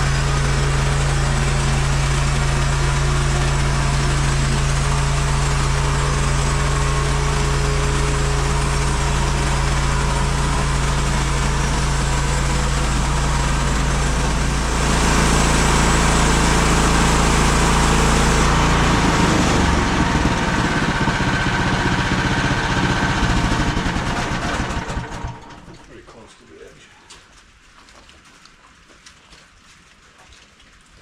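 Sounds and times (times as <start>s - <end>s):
sawmill engine running: 0.0s - 26.2s.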